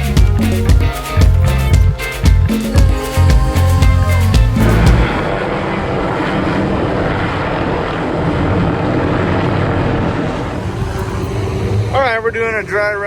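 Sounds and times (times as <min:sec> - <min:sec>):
aircraft engine drone: 0:04.2 - 0:13.0.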